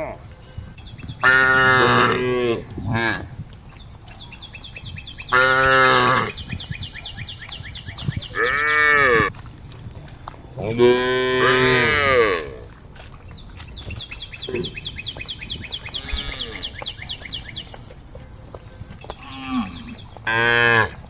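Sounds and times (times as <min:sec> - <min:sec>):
cows mooing: 0:01.2 - 0:03.3, 0:05.2 - 0:06.5, 0:08.3 - 0:09.3, 0:10.6 - 0:12.7, 0:15.8 - 0:17.2, 0:18.6 - 0:21.0.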